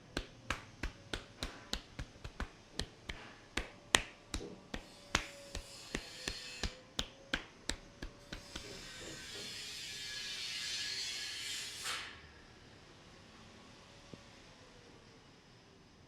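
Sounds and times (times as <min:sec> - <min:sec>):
hands rubbing hair and scalp: 0:00.0 - 0:08.8
hands tapping on head: 0:00.0 - 0:08.8.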